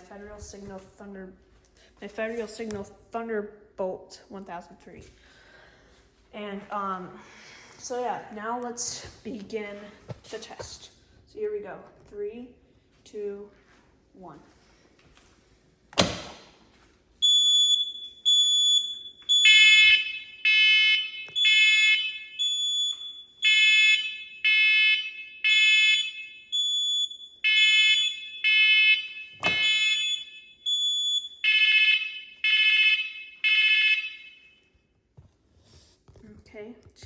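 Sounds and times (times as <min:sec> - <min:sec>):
high alarm beeps: 0:17.2 - 0:34.6
fire alarm horn blasts: 0:17.2 - 0:34.9.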